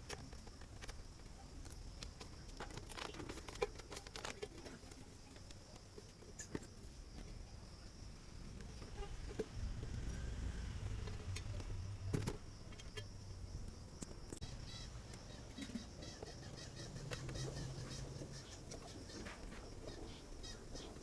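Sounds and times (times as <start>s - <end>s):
low hum: 9.0s - 14.7s
birds chirping: 10.8s - 21.0s.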